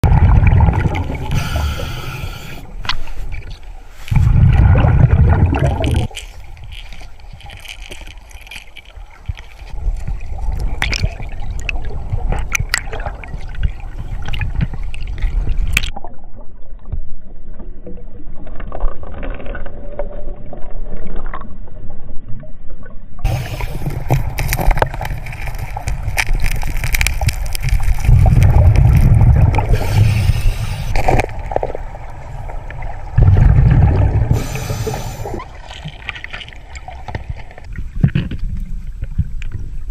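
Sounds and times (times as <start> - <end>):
water gurgling and bubbling: 0.0 - 2.9, 4.0 - 16.0, 23.2 - 39.4.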